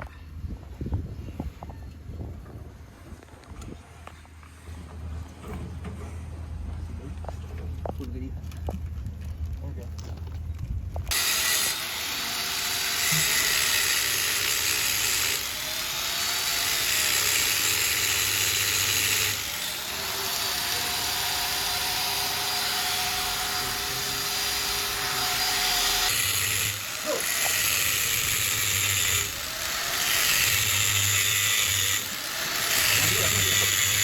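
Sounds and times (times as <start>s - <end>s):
electric power tool running: 11.1s - 34.0s.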